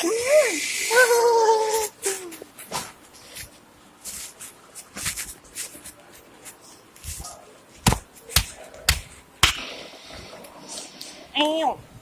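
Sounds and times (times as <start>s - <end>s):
shuffling and rustling: 0.9s - 9.4s.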